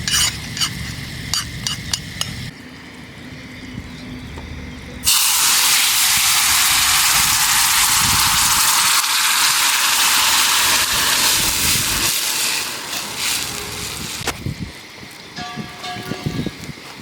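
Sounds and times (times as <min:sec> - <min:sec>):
food sizzling in a pan: 0:05.1 - 0:14.3.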